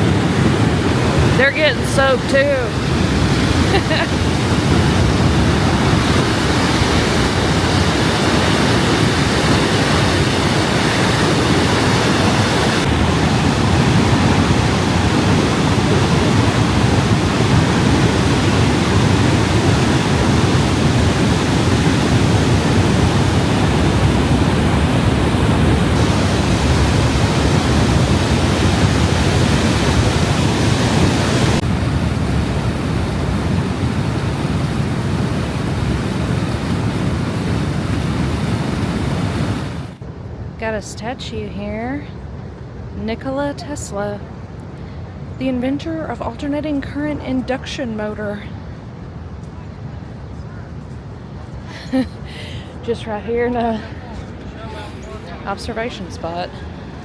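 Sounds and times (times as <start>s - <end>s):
waterfall rushing: 0.0s - 40.0s.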